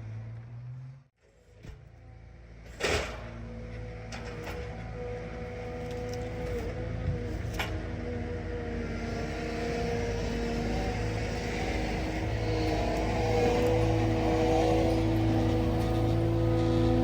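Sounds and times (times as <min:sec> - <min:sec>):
diesel engine running: 0:03.6 - 0:17.0.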